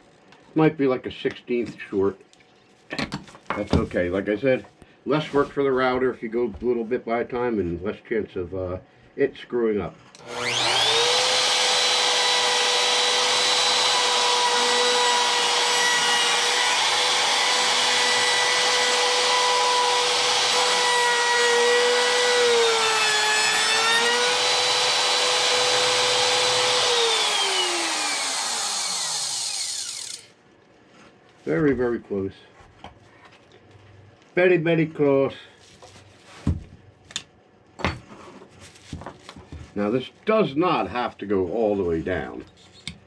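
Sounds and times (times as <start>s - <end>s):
electric router whining: 10.2s - 30.3s.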